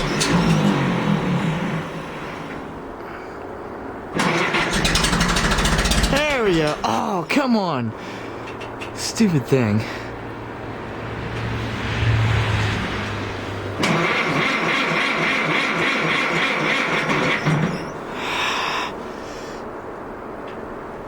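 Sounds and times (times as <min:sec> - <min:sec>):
tractor engine cranking: 0:00.0 - 0:03.0, 0:04.1 - 0:07.5, 0:08.2 - 0:18.4
engine running: 0:00.0 - 0:07.3, 0:07.9 - 0:21.0.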